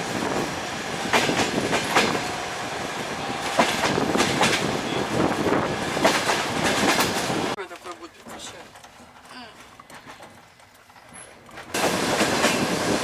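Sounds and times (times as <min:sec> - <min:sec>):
wheels clacking at rail joints: 0:00.0 - 0:02.6, 0:03.2 - 0:13.0
train wheels rumbling: 0:00.0 - 0:07.6, 0:11.8 - 0:13.0.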